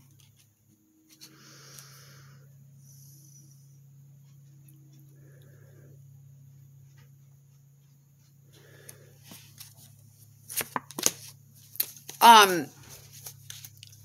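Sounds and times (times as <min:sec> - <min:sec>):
faint low hum: 0:00.0 - 0:10.5
cards tapping and snapping: 0:10.5 - 0:12.2.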